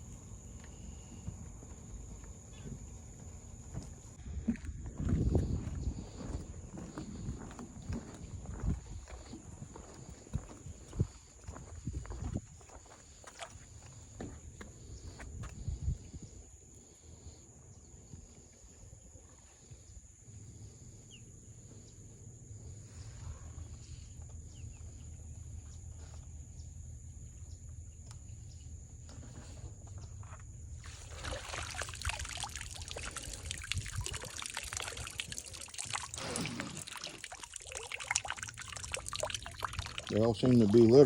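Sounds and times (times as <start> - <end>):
water splashing and trickling: 5.4 - 14.4, 30.8 - 41.0.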